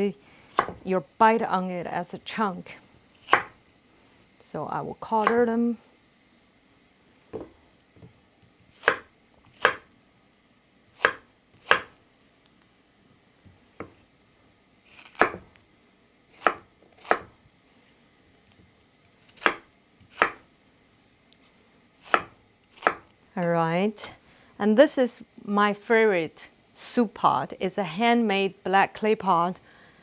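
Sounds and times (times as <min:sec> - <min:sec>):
knife chopping yam: 0:00.4 - 0:00.9, 0:03.2 - 0:03.6, 0:05.2 - 0:05.5, 0:07.3 - 0:09.9, 0:10.9 - 0:12.0, 0:14.9 - 0:15.6, 0:16.3 - 0:17.4, 0:19.2 - 0:20.5, 0:22.0 - 0:23.1.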